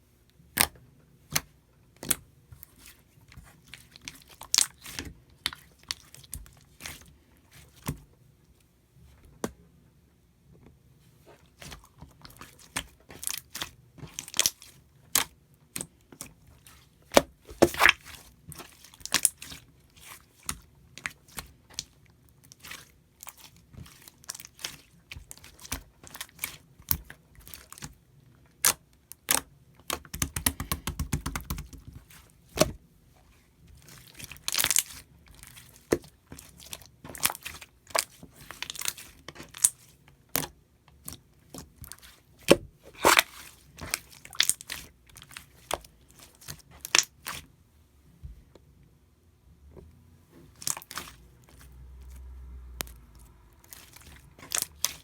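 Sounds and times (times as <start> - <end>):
slime crackling and popping: 41.7 - 47.4, 50.6 - 51.2, 52.8 - 55.0.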